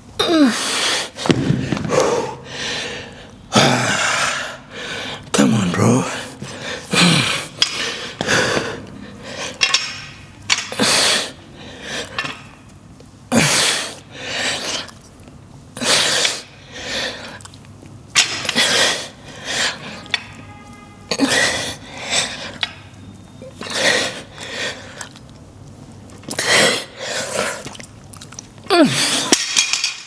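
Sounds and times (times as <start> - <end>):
man breathing out hard: 0.5 - 5.2.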